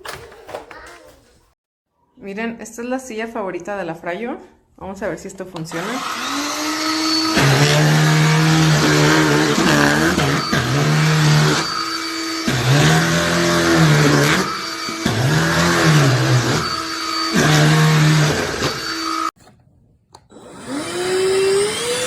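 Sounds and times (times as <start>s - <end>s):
handheld vacuum running: 5.7s - 19.3s, 20.3s - 22.0s.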